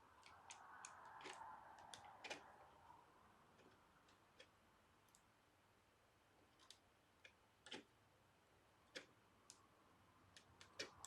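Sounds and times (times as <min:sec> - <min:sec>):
plastic toy parts clicking: 0:00.2 - 0:02.5, 0:10.3 - 0:11.0.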